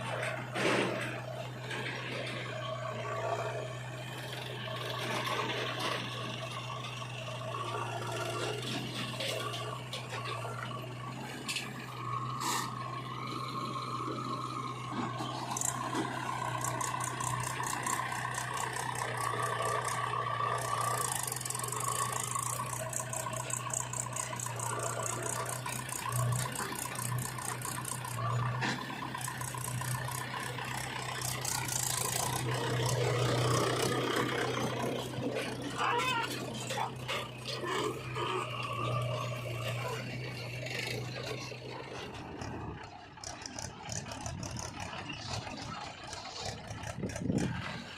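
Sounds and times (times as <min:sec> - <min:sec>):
diesel engine running: 0:00.0 - 0:47.9
metallic rattling of machine: 0:15.0 - 0:47.9.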